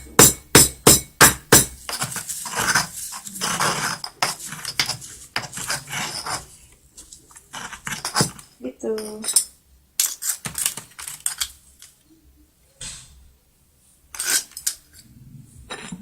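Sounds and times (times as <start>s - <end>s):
pestle pounding in a mortar: 0.0s - 1.8s.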